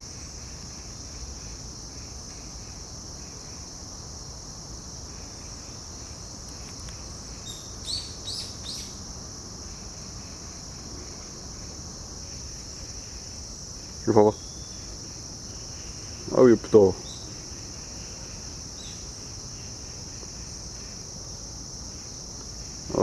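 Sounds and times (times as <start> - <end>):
crickets trilling: 0.0 - 23.0
bird chirping: 6.9 - 9.0.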